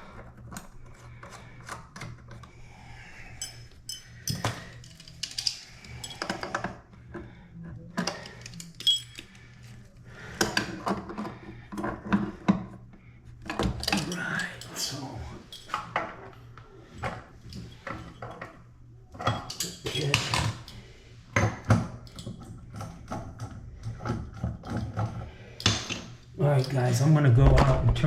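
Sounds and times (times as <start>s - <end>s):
small parts clicking and clattering: 3.3s - 9.8s, 13.4s - 20.8s, 21.4s - 26.9s.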